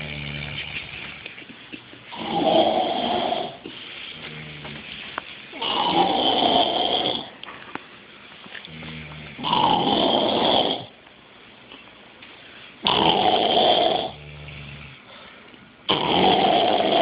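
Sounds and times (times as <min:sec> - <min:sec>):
loud rasping snoring: 0:00.0 - 0:00.8, 0:02.1 - 0:03.6, 0:05.6 - 0:07.3, 0:08.8 - 0:10.9, 0:12.8 - 0:15.0, 0:15.9 - 0:17.0.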